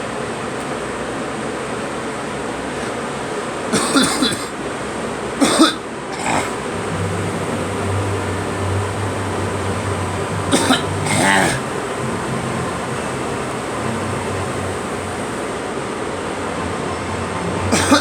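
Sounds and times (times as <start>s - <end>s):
steady background noise: 2.8s - 15.8s, 16.6s - 18.0s
person coughing: 5.4s - 14.0s, 17.8s - 18.0s.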